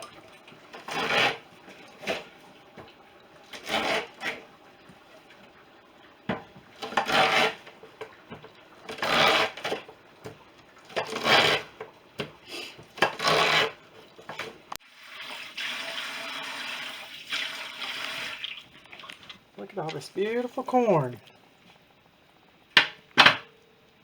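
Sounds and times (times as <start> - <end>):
corn scraped along cutter blades: 0.8 - 1.4, 6.8 - 7.6
steady hiss: 19.2 - 24.0.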